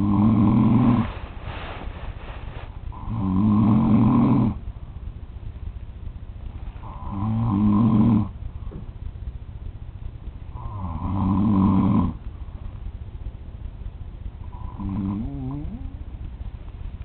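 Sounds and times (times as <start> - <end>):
man snoring heavily: 0.0 - 1.1, 2.9 - 4.6, 6.8 - 8.3, 10.6 - 12.2, 14.5 - 15.9
breathy exhale: 0.9 - 3.1.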